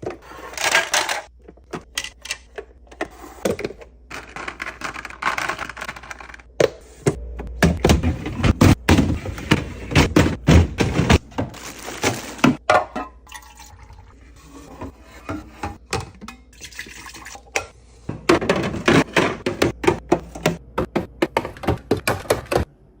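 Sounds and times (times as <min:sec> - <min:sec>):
liquid pouring: 0:13.2 - 0:14.4, 0:16.6 - 0:17.6.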